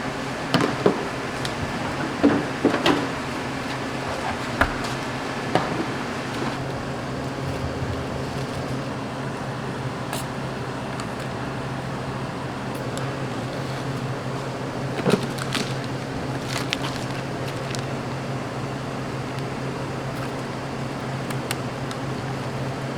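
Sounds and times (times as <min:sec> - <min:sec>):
kitchen fan humming: 0:00.0 - 0:22.9
clicks and knocks of kitchen work: 0:00.1 - 0:08.9.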